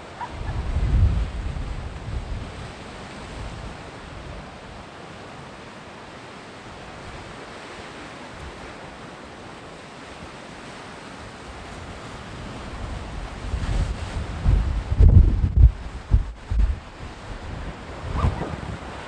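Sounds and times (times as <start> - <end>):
surf washing on shore: 0.0 - 19.0
wind buffeting microphone: 0.1 - 2.7, 12.3 - 19.0.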